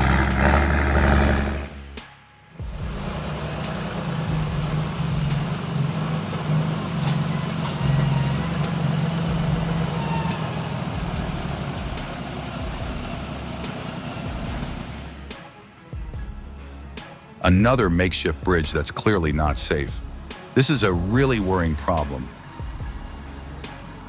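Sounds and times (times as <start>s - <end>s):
heavy truck engine under load: 0.0s - 1.8s, 2.7s - 15.4s.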